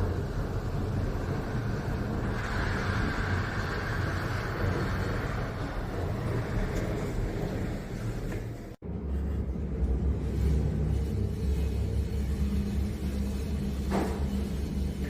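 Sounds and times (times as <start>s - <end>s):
lift car rumbling in shaft: 0.0s - 15.0s
rushing hiss: 1.2s - 5.9s.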